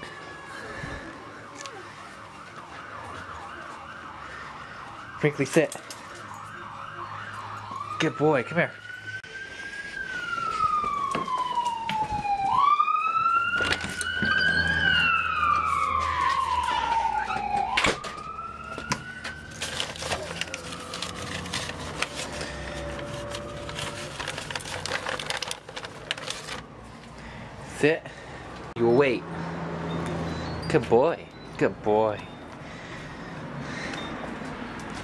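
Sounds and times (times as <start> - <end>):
siren wailing: 0.0 - 25.6.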